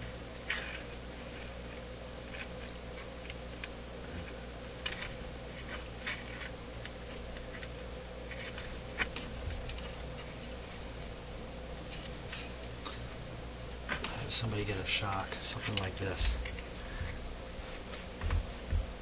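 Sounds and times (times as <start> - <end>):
low mains hum: 0.0 - 19.0
light clicks and ticks: 15.0 - 16.6.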